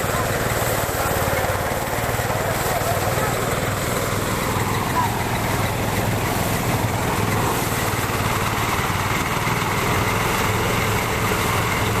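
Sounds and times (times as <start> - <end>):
harvesting machine engine running: 0.0 - 12.0.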